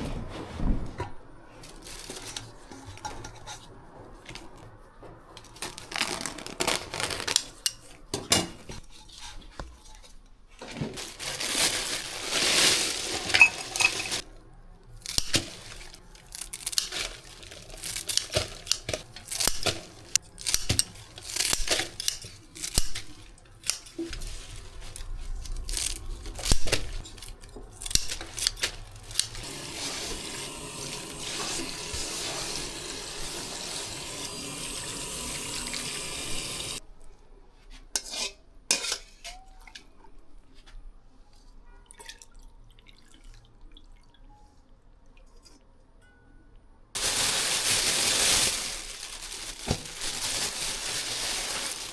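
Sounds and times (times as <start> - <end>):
bowls and utensils clinking: 12.3 - 14.3
water running from a tap: 29.4 - 36.8.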